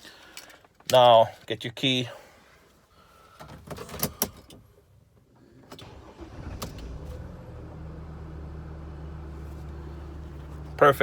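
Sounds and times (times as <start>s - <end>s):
van engine cranking and idling: 5.5s - 11.0s.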